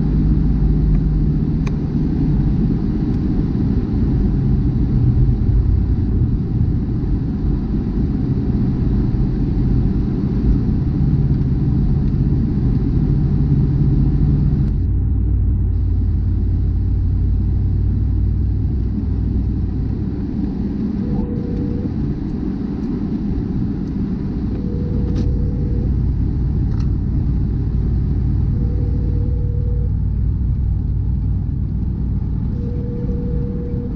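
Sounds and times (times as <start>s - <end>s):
car engine and tyres rumbling: 0.0s - 33.9s
short faint tone: 21.0s - 22.0s, 24.6s - 26.1s, 28.4s - 30.3s, 32.5s - 33.9s.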